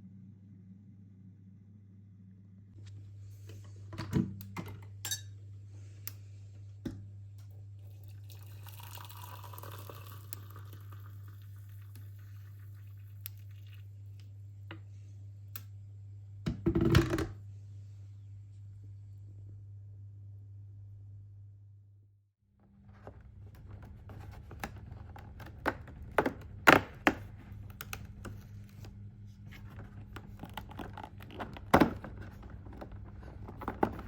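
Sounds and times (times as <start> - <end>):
steady low hum: 0.0 - 8.1
dishes clattering: 5.0 - 5.4
liquid pouring: 7.8 - 14.0.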